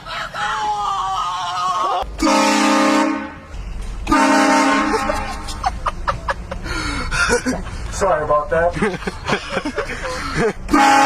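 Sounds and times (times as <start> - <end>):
train horn blasts: 2.2 - 5.5, 10.7 - 11.0.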